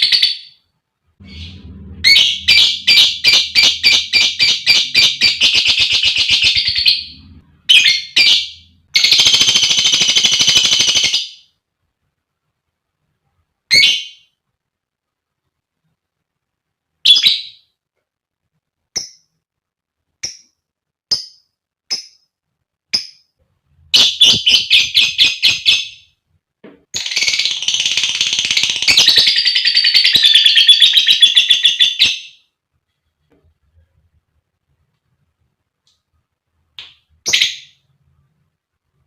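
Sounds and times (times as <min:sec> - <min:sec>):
lovebird chirping: 0:00.0 - 0:11.6, 0:13.7 - 0:14.4, 0:17.0 - 0:17.8, 0:23.9 - 0:26.2, 0:26.9 - 0:32.5, 0:37.2 - 0:37.9.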